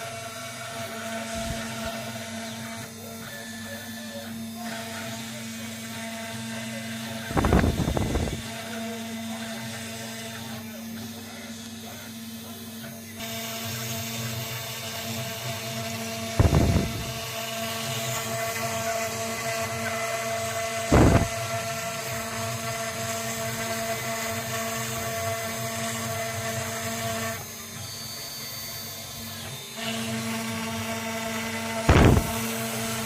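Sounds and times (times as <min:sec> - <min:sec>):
router spindle whining: 0:00.0 - 0:33.0
loud thumps: 0:07.4 - 0:08.4, 0:16.4 - 0:17.2, 0:20.9 - 0:21.3, 0:31.9 - 0:32.4
bit cutting wood hiss: 0:16.0 - 0:18.1, 0:20.6 - 0:21.4.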